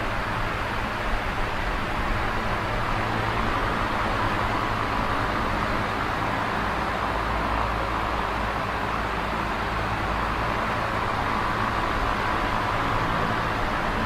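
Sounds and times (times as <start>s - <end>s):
box fan running: 0.0s - 14.0s.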